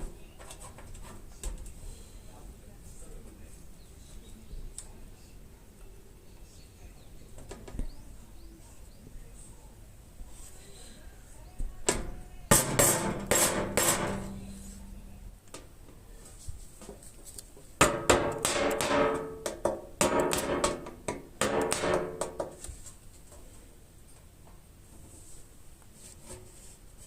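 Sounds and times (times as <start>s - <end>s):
hammer on sheet metal: 11.9s - 15.1s, 17.8s - 22.6s.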